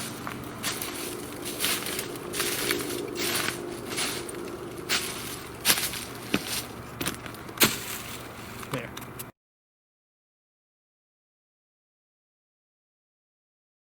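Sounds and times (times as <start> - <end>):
footsteps on forest floor: 0.0 - 8.9.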